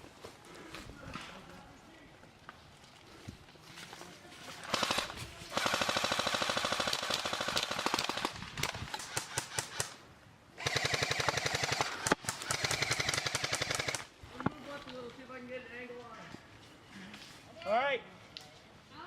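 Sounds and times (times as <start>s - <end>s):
airsoft rifle firing bursts: 4.6s - 10.0s, 10.6s - 14.1s.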